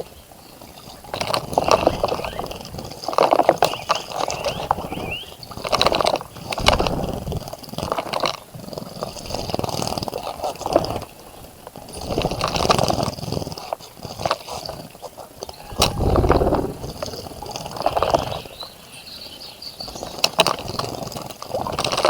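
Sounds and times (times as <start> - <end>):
wings fluttering: 3.7 - 7.6, 15.4 - 18.5.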